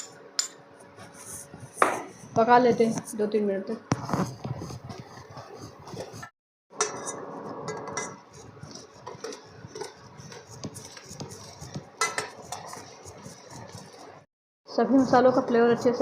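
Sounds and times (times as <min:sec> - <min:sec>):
spoon stirring in a pan: 0:03.9 - 0:14.3.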